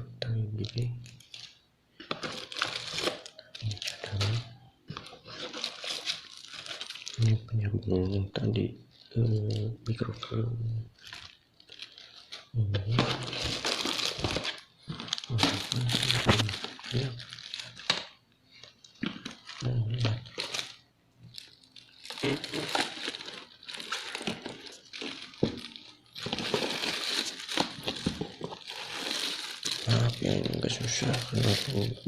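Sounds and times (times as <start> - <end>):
plastic packaging crinkling: 0.6 - 7.5, 8.8 - 32.0.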